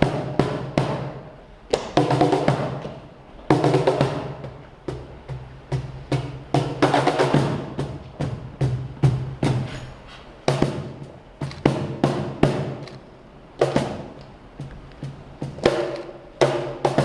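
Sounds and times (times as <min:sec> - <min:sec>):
music: 0:00.0 - 0:02.9, 0:03.5 - 0:09.8, 0:10.5 - 0:12.8, 0:13.6 - 0:17.0
tap shoes clicking on floor: 0:11.4 - 0:13.0, 0:13.8 - 0:16.1.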